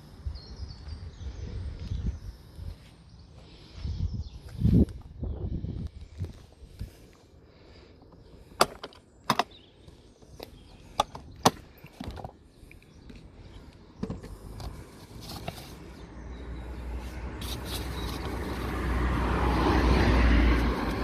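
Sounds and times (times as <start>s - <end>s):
soft handling noises: 10.3s - 16.0s, 17.0s - 18.8s.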